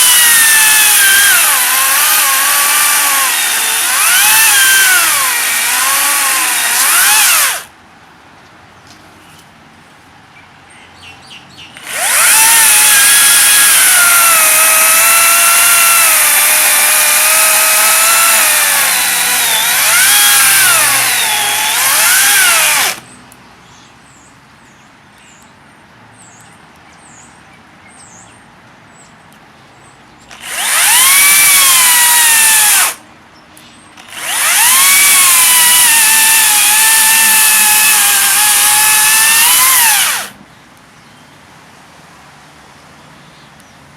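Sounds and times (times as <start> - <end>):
electric chainsaw cutting: 0.0 - 7.7, 11.8 - 23.0, 30.3 - 33.0, 34.0 - 40.4.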